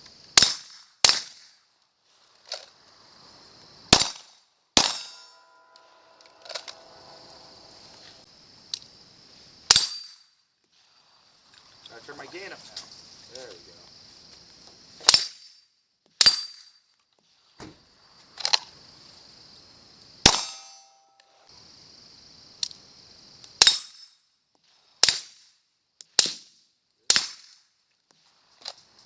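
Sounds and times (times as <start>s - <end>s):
crickets chirping: 0.0s - 0.6s, 1.6s - 16.0s, 17.2s - 25.0s, 28.2s - 29.0s
pistol shots: 4.8s - 5.3s
metallic ring of steel target: 4.8s - 8.3s, 20.3s - 21.5s.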